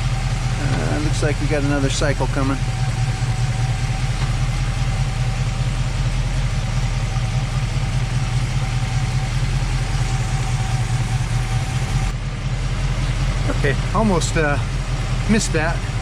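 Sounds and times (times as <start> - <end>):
car engine idling: 0.0 - 16.0.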